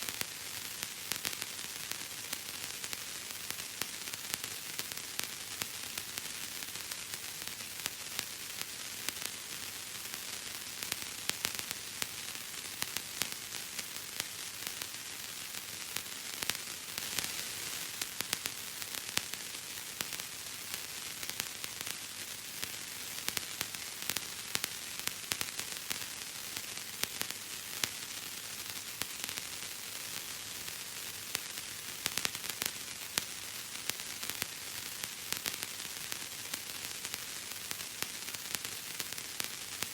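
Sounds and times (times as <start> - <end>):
constant hiss: 0.0 - 39.9.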